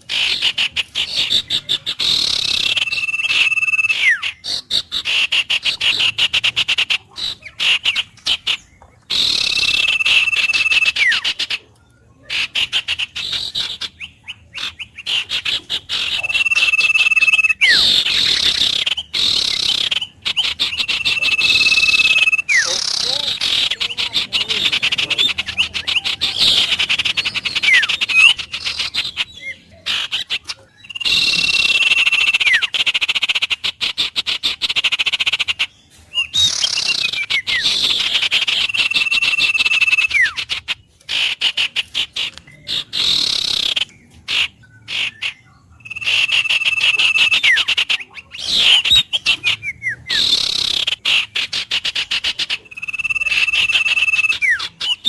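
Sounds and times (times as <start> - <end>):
bird whistle call: 0.0 - 11.7, 12.3 - 55.0
bird rattling trill: 15.0 - 29.3.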